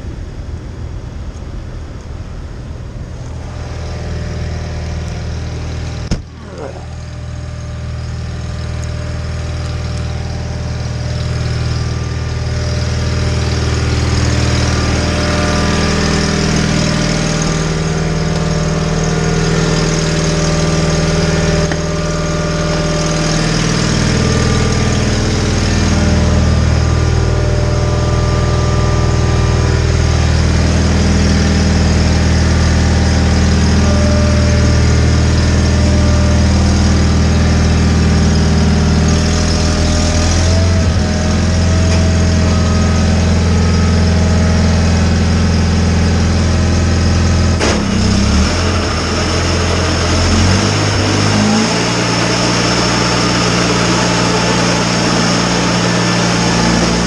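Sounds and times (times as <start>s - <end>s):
garden tractor engine running: 0.2s - 57.0s.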